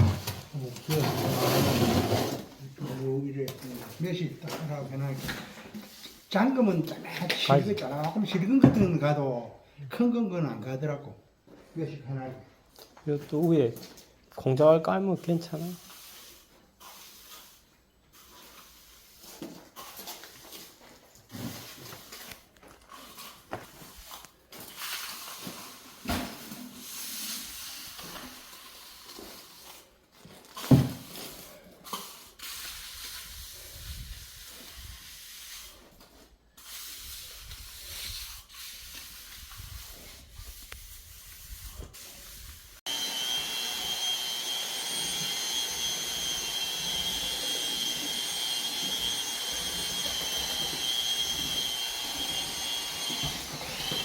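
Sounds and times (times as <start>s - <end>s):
scraping and knocking on concrete: 0.0s - 4.0s.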